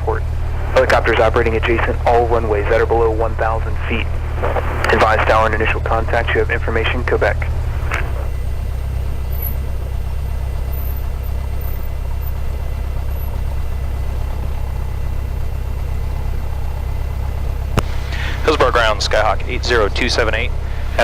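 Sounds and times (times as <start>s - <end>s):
aircraft engine idling: 0.0s - 21.0s.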